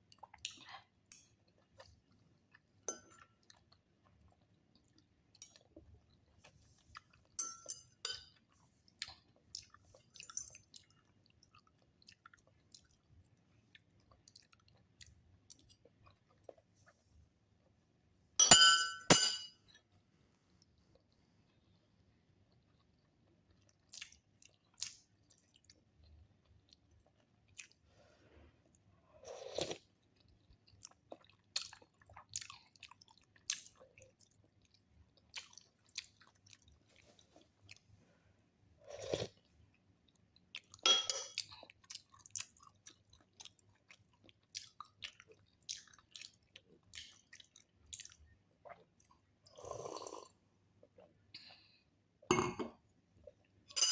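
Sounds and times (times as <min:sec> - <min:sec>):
person chewing crunchy food: 0:41.4 - 0:51.1.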